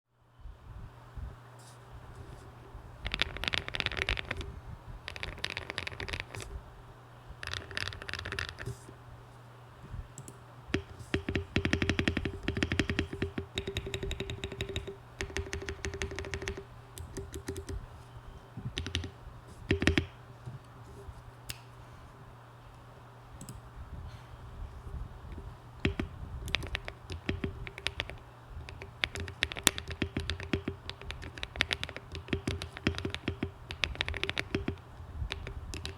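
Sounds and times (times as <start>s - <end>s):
mechanical keyboard typing: 3.0s - 4.5s, 5.1s - 6.5s, 7.4s - 8.9s, 10.2s - 17.8s, 18.7s - 20.1s, 25.3s - 35.9s.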